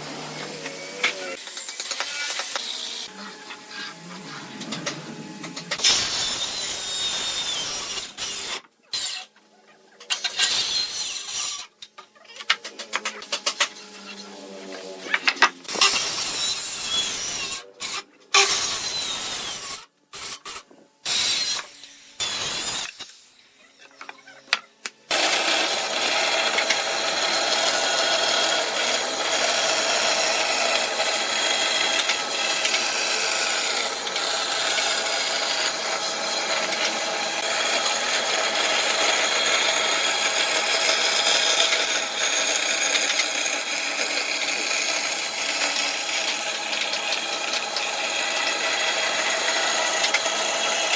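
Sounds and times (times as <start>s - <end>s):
power tool running on wood: 0.0s - 8.6s, 24.0s - 50.9s.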